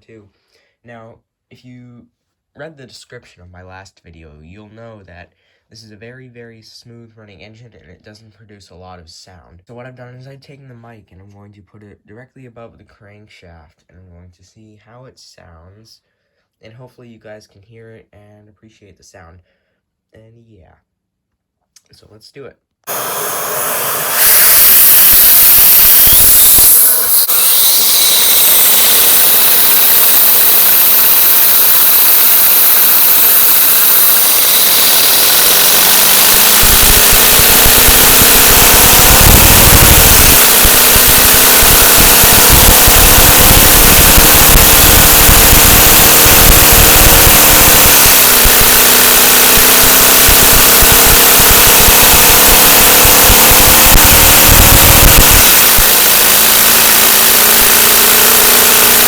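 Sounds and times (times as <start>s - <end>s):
small engine running note: 22.9s - 59.0s
vacuum cleaner suction hiss: 22.9s - 59.0s.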